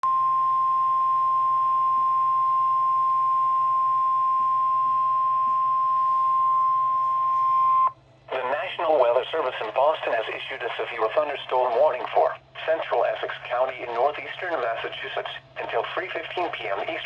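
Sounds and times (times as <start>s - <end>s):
steady alarm tone: 0.0s - 8.0s
faint radio hiss: 4.8s - 17.0s.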